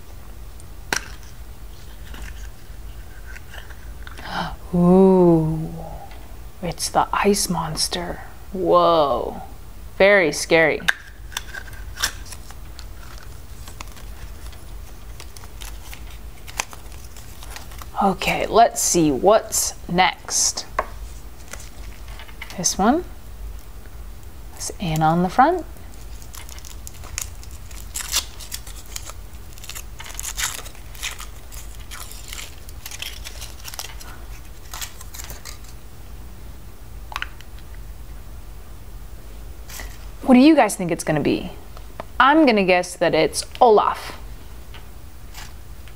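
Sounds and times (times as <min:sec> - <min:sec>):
low steady hum: 0:00.0 - 0:45.9
foil wrapper crinkling and tearing: 0:11.0 - 0:18.4, 0:21.0 - 0:22.6, 0:25.8 - 0:35.8, 0:45.3 - 0:45.6
packaging rustling: 0:11.1 - 0:18.0, 0:20.9 - 0:22.5, 0:25.8 - 0:35.8.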